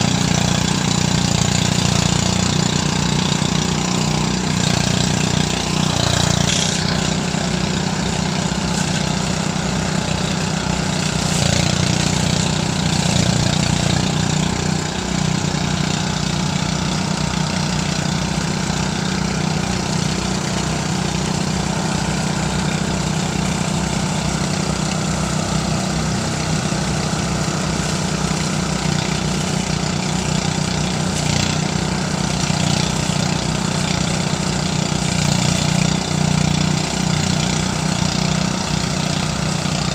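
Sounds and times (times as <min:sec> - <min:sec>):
threshing machine engine drone: 0:00.0 - 0:39.9.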